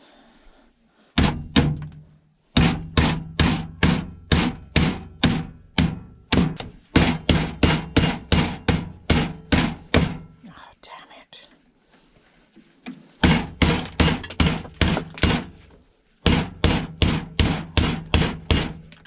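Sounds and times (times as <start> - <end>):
hammer striking plastic casing: 1.2 - 10.3, 13.2 - 15.7.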